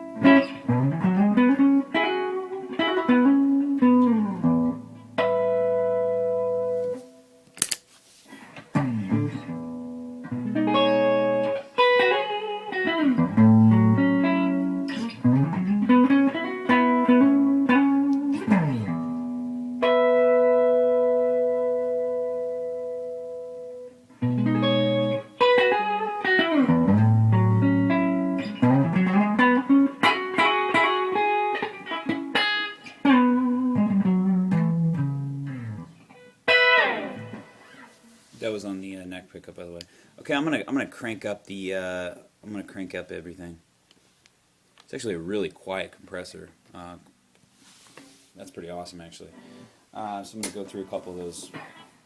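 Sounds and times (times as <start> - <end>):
clean electric guitar riff: 0.0 - 7.1, 8.7 - 38.1
guitar chord ringing out: 8.9 - 35.9, 36.5 - 37.9.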